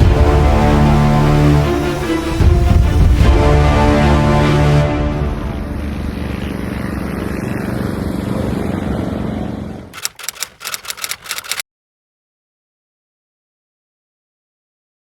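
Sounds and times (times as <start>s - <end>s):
sharp engine crackles: 10.0s - 11.6s.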